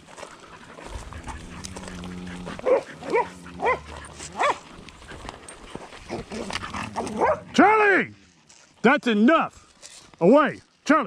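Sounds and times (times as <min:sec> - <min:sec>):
dog barking: 0:02.6 - 0:04.6, 0:07.2 - 0:07.5.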